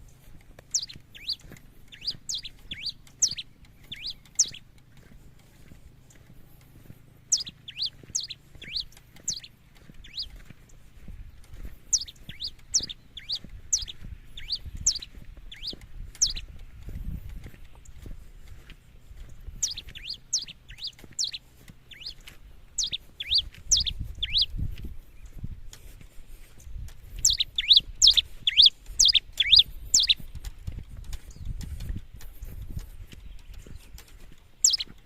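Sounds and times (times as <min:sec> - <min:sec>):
finch singing high notes: 0:00.7 - 0:04.6, 0:07.3 - 0:09.5, 0:19.6 - 0:22.2, 0:22.8 - 0:24.5, 0:27.2 - 0:30.2, 0:34.6 - 0:34.9.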